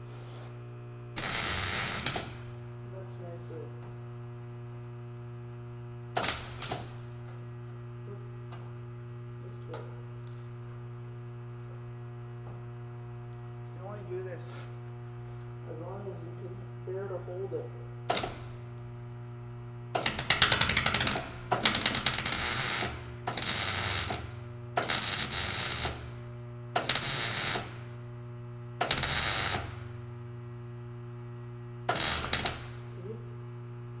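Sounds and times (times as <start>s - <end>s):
steady low hum: 0.0s - 34.0s
welder arc crackling: 1.2s - 2.6s, 6.2s - 7.1s, 18.1s - 18.9s, 20.0s - 26.2s, 26.8s - 27.9s, 28.8s - 30.0s, 31.9s - 32.8s.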